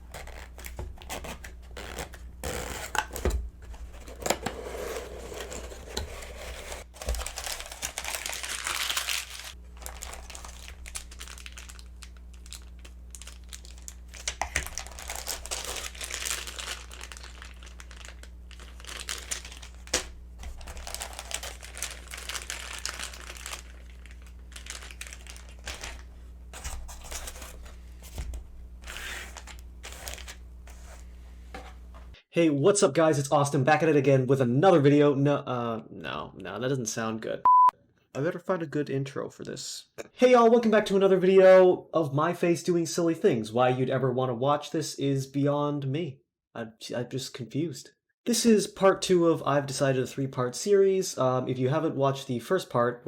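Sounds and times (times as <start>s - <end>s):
packaging tearing: 0.0s - 3.3s, 4.0s - 30.9s
packaging crinkling and rustling: 0.0s - 31.0s
steady low hum: 0.0s - 32.2s.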